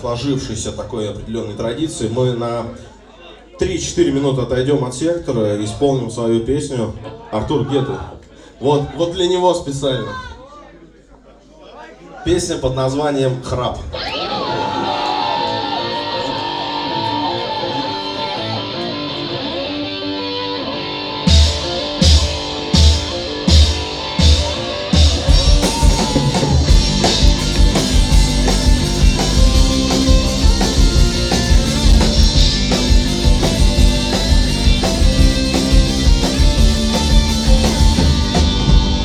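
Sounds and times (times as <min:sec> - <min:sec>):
electric guitar playing: 0:14.0 - 0:39.0
rock band playing: 0:14.0 - 0:39.0
drum kit hits with cymbals: 0:21.3 - 0:39.0.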